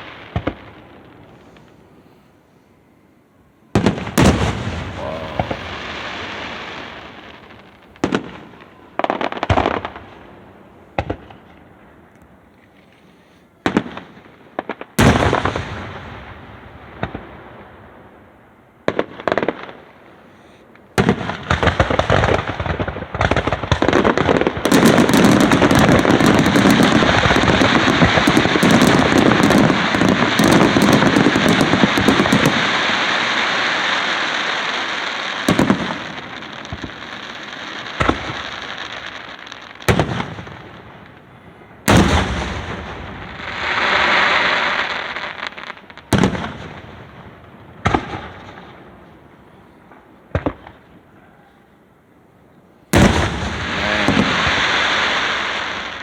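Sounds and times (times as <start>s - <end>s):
rapid crackling firework bursts: 3.8s - 10.2s, 18.9s - 41.2s, 41.9s - 47.2s, 52.9s - 56.0s.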